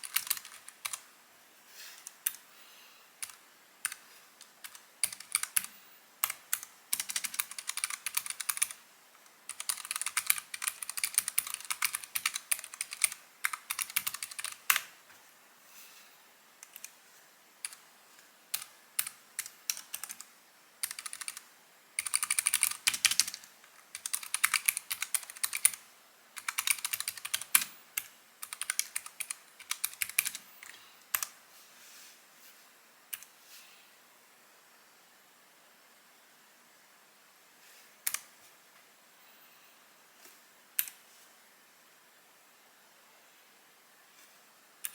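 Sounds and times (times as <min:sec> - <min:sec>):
mechanical keyboard typing: 0:00.0 - 0:01.0, 0:04.6 - 0:08.8, 0:09.5 - 0:14.8, 0:18.5 - 0:21.4, 0:22.0 - 0:25.8, 0:26.4 - 0:31.3.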